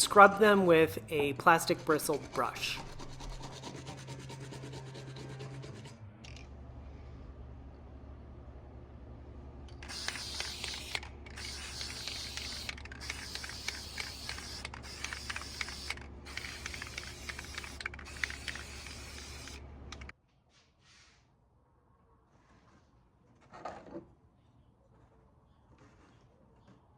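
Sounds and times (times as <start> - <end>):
brush scrubbing metal handles: 1.2 - 5.8.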